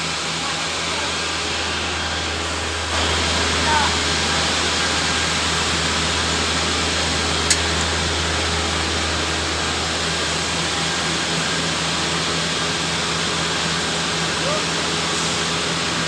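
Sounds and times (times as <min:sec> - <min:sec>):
machine hum and hiss: 0:00.0 - 0:16.0.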